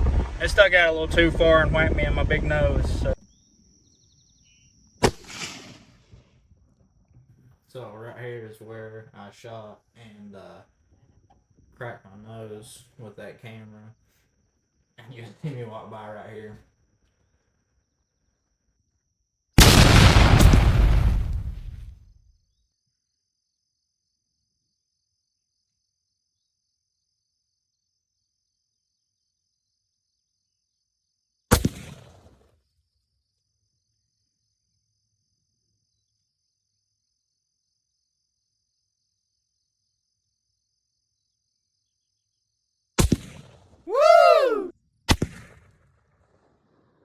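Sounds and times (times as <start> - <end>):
insects buzzing: 3.1 - 6.2
rifle shots: 5.0 - 6.2, 19.6 - 21.3, 31.5 - 32.4, 43.0 - 43.7, 45.1 - 45.8.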